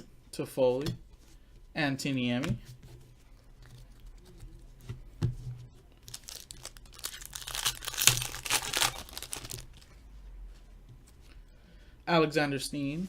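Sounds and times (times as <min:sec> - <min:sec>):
foil wrapper crinkling and tearing: 0:06.0 - 0:09.8.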